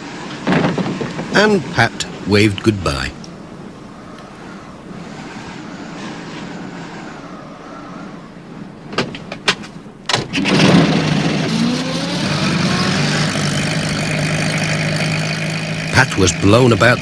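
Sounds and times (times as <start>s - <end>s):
wind whistling: 0.0s - 9.0s
van engine starting and running: 9.3s - 17.0s.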